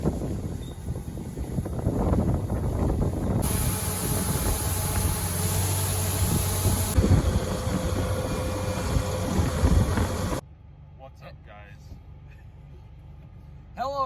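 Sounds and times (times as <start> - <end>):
farm machinery engine rumbling: 0.0 - 10.6.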